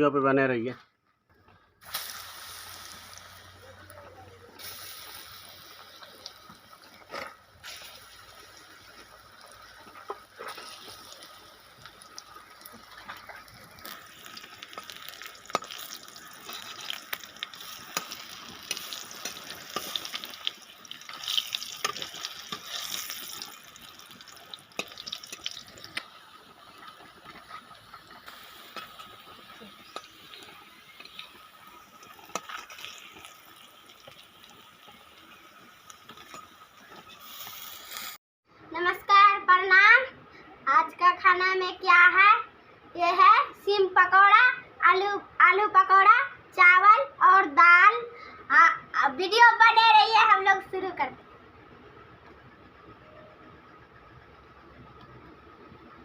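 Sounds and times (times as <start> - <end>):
hot oil sizzling and popping: 1.3 - 38.2.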